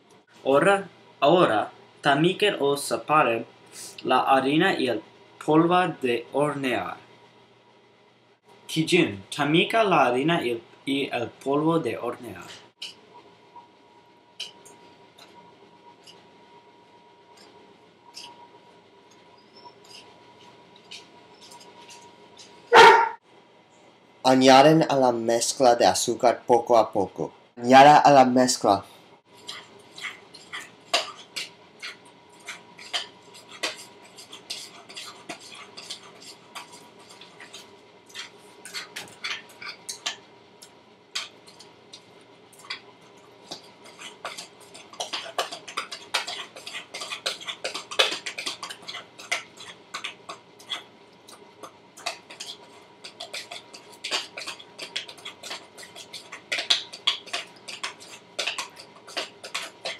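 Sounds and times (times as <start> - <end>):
utensil tapping mixing bowl: 32.8 - 40.2, 43.4 - 59.9.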